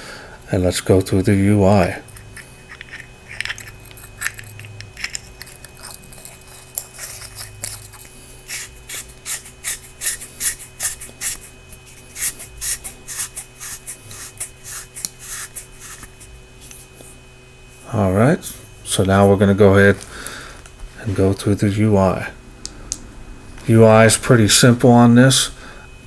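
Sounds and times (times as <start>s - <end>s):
flashlight parts scraping and clicking: 2.1s - 11.4s.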